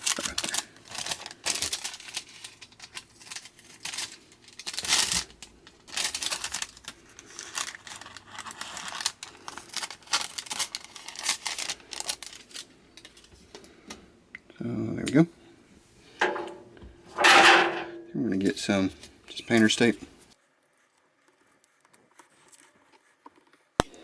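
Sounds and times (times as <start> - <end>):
parchment paper crinkling: 0.0 - 13.4.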